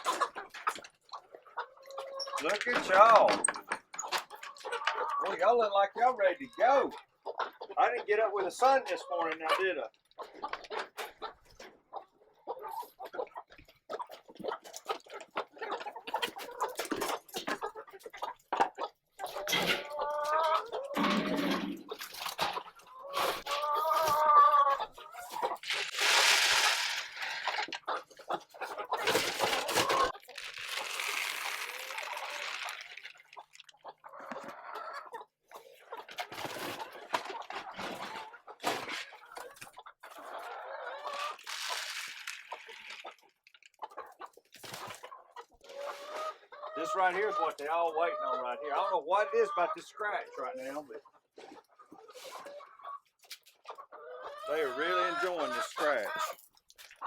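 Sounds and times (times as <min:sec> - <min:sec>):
drawn-out hen calls: 0:00.0 - 0:56.4
chickens clucking: 0:00.0 - 0:57.0
rustling: 0:25.4 - 0:27.8, 0:29.0 - 0:33.7, 0:41.2 - 0:43.2.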